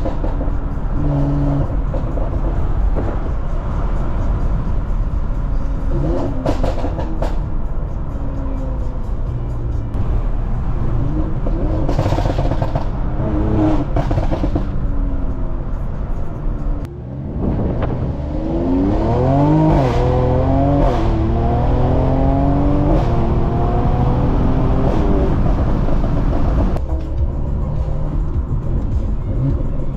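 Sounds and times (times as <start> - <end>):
car engine accelerating hard: 16.6 - 26.8.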